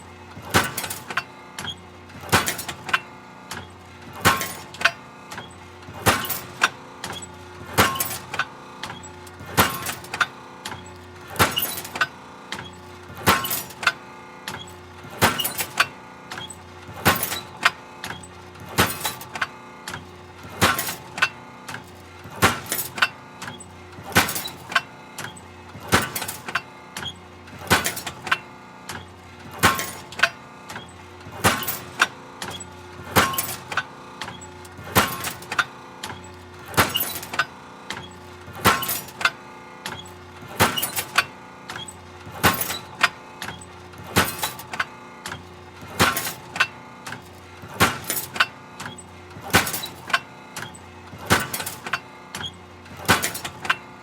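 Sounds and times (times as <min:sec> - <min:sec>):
metal shear banging: 0:04.2 - 0:05.4, 0:11.4 - 0:12.0, 0:13.2 - 0:13.9, 0:14.5 - 0:17.7, 0:18.7 - 0:19.4, 0:24.1 - 0:53.9.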